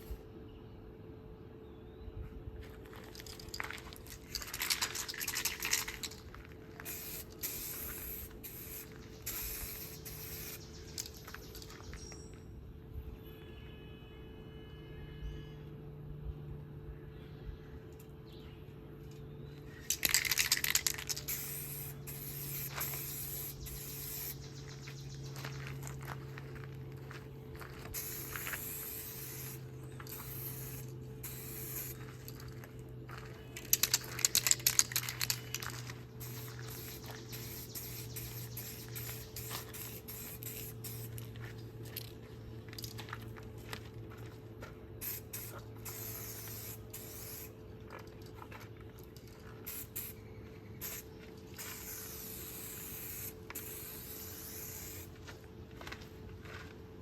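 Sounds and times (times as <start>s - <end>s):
steady low hum: 0.0s - 57.0s
aerosol spray can hissing: 6.8s - 10.7s, 21.1s - 24.4s, 28.0s - 29.6s, 30.2s - 32.0s, 36.2s - 41.1s, 45.0s - 47.5s, 51.6s - 55.1s.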